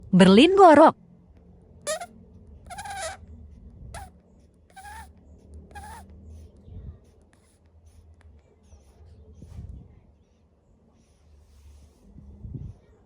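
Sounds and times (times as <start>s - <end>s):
monkey snoring with whistle: 1.9s - 2.1s, 2.7s - 3.2s, 4.7s - 5.1s, 5.7s - 6.0s.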